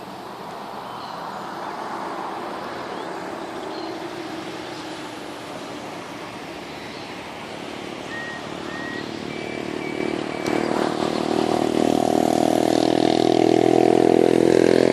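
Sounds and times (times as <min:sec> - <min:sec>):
city traffic hum: 0:00.0 - 0:14.9
vehicle engine approaching: 0:00.0 - 0:14.9.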